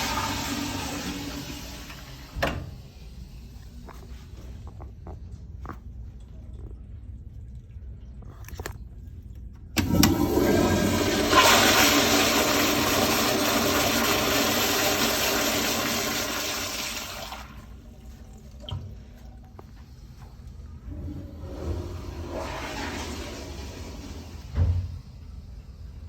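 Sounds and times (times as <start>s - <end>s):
toilet flushing: 0.0s - 3.7s, 9.8s - 26.0s.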